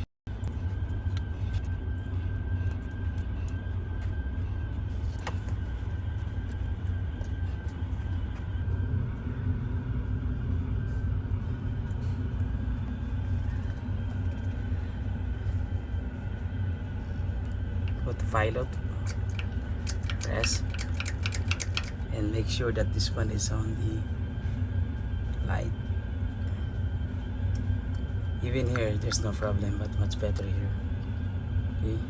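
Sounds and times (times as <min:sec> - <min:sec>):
steady low rumble: 0:00.0 - 0:32.0
small clicks: 0:19.0 - 0:22.0.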